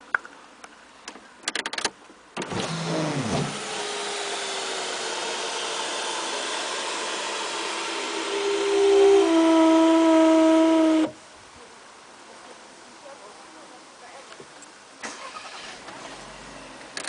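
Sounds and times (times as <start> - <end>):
sliding sunroof motor: 2.4 - 11.2.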